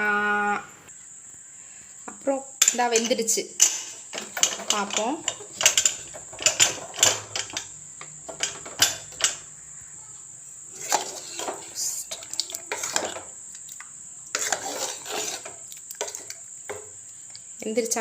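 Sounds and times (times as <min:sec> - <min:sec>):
metal spoon scraping a pot: 0:02.6 - 0:09.5, 0:10.7 - 0:13.3, 0:14.3 - 0:16.9.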